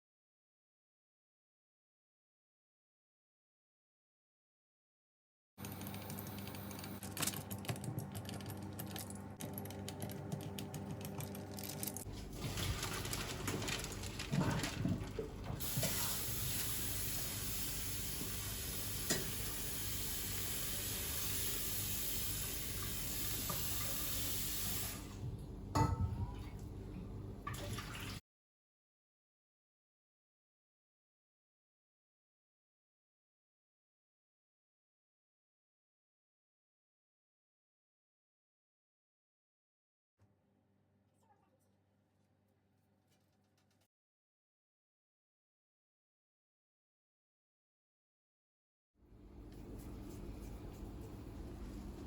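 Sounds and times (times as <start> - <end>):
tap water running into sink: 11.1 - 25.2
dishes clinking: 25.8 - 26.6.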